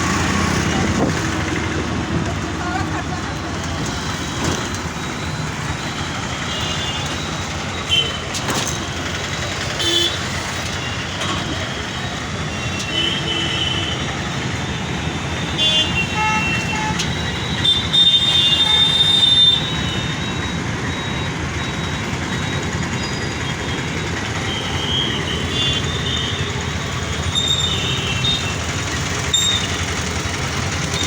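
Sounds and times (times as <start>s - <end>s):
construction machinery: 0.0s - 31.0s
road traffic: 0.0s - 31.0s.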